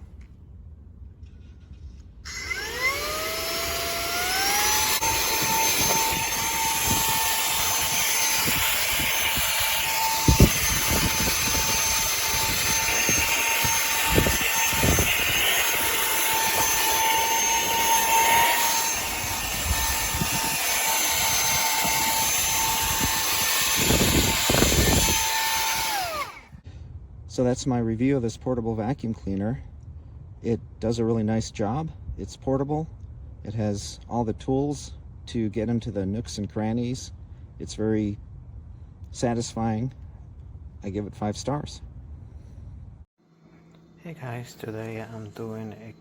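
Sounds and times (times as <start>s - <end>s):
handheld vacuum cleaner whine: 2.3s - 26.6s.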